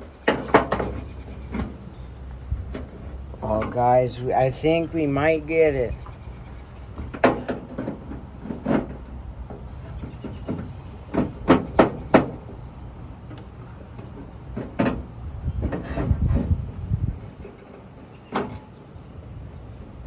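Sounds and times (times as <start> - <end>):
metal knocks and clanks: 0.0 - 2.1, 7.0 - 12.6, 13.9 - 16.6
rattling rumble: 0.0 - 18.7.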